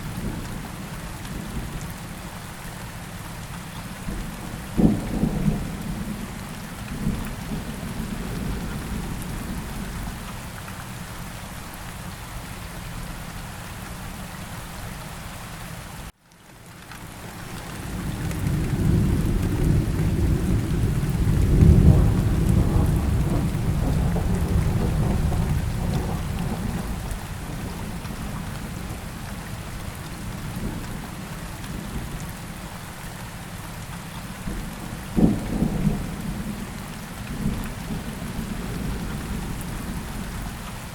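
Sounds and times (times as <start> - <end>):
steady rain falling: 0.0 - 40.9
rumble of thunder: 4.1 - 10.3, 17.6 - 32.2, 34.4 - 40.6.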